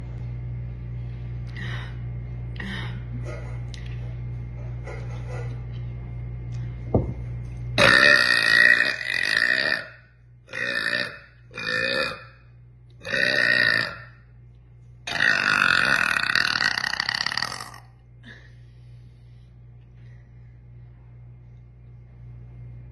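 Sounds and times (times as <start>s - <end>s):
girl burping: 7.8s - 9.9s, 10.5s - 12.3s, 13.0s - 14.1s, 15.1s - 18.4s.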